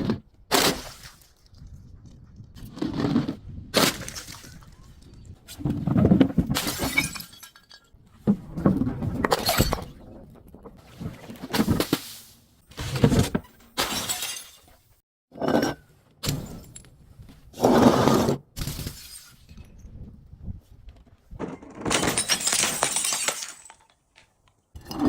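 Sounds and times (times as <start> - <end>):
glass bottles breaking and crushing: 6.5 - 8.0, 9.3 - 10.0, 12.9 - 14.9, 18.6 - 19.6, 21.6 - 24.1.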